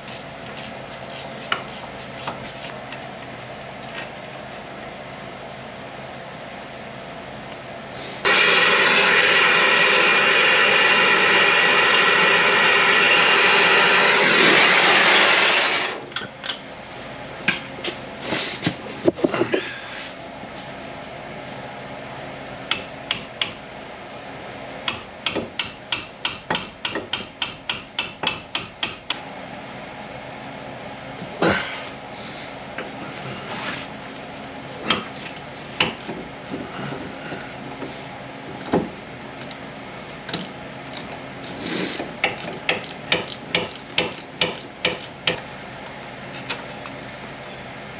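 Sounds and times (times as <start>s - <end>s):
loud steady whir: 7.5s - 16.3s
ratchet wrench clicking: 42.2s - 45.4s.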